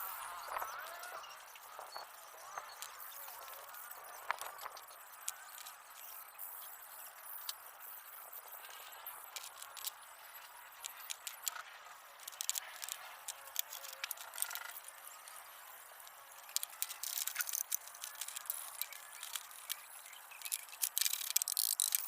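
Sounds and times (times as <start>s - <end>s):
metallic clinks and rattles: 8.5s - 22.0s.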